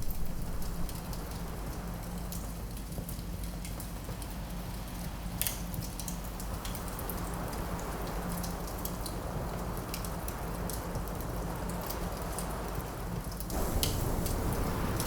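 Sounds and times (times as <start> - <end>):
wind rushing: 0.0 - 1.8, 13.6 - 15.0
wood fire crackling and popping: 0.0 - 3.8, 13.4 - 15.0.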